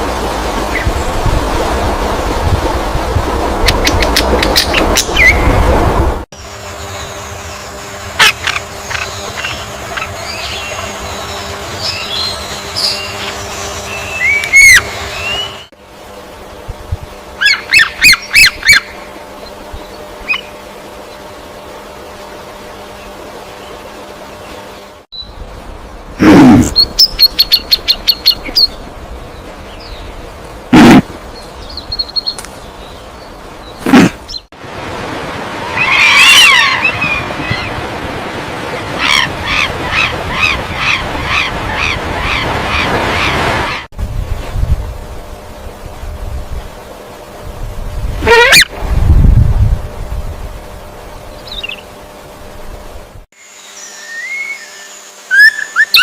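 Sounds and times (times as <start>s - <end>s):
steady background hiss: 6.4s - 42.6s, 44.0s - 56.0s
bird calling: 6.8s - 15.7s, 17.4s - 21.3s, 26.2s - 34.5s, 35.6s - 37.9s, 38.7s - 43.9s, 48.2s - 48.7s, 51.3s - 52.0s, 53.6s - 56.0s
bird repeated call notes: 8.2s - 15.7s, 54.0s - 56.0s.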